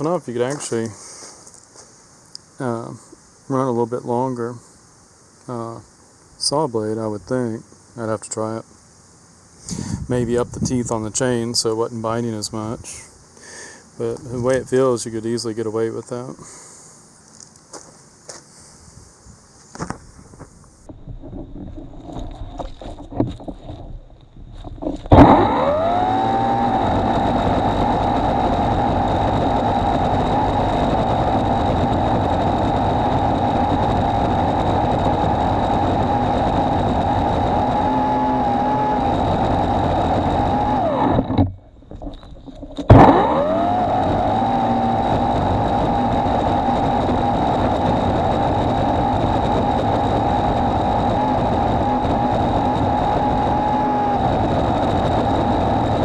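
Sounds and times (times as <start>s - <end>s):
electric chainsaw whining: 25.1s - 41.5s, 42.8s - 56.0s.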